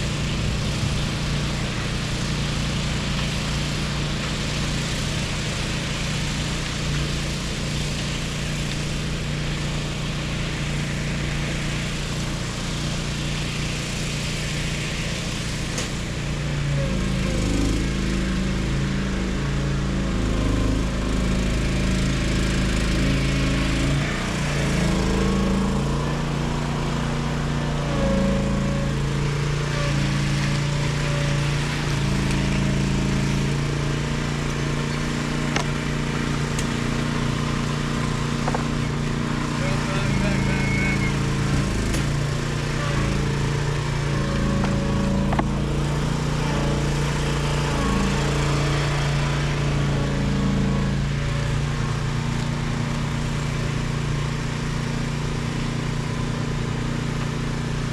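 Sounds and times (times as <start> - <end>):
small gasoline engine running: 0.0 - 57.9.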